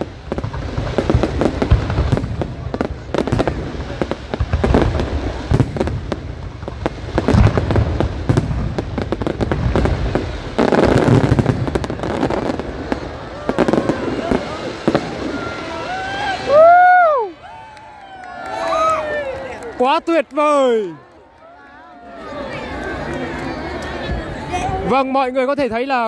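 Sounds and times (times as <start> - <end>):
fireworks booming and banging: 0.0 - 16.8
fireworks crackling: 0.0 - 26.0.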